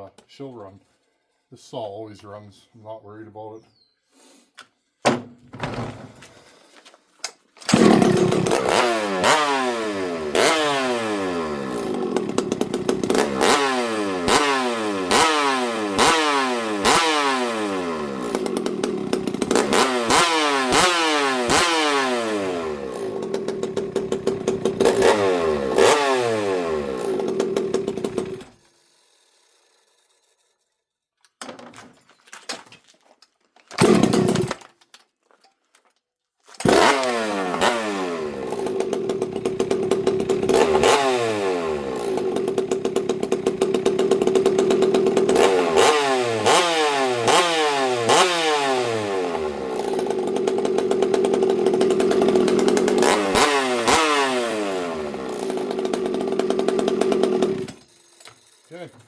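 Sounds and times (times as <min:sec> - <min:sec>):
chainsaw revving: 0:07.7 - 0:28.6, 0:33.8 - 0:34.7, 0:36.6 - 0:58.9.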